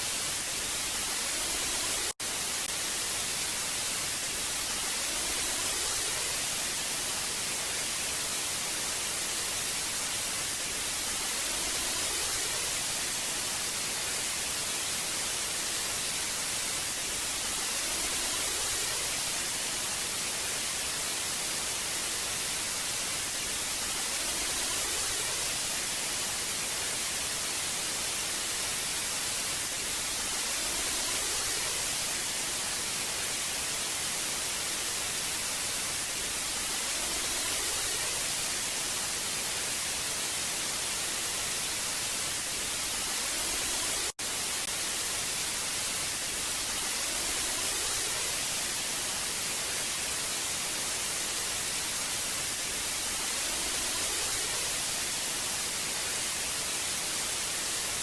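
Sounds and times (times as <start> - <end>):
tv static hiss: 0.0 - 58.0.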